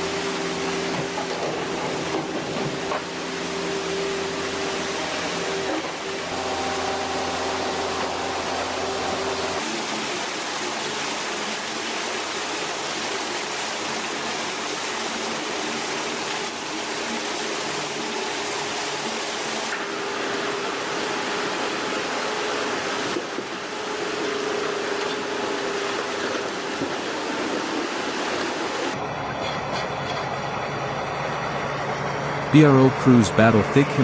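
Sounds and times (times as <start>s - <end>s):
machine engine hum: 0.0s - 10.2s.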